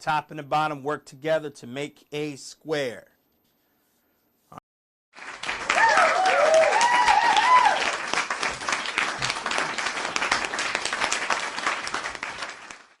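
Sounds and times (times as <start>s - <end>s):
crowd applause: 5.2s - 13.0s
crowd cheering: 5.3s - 12.9s.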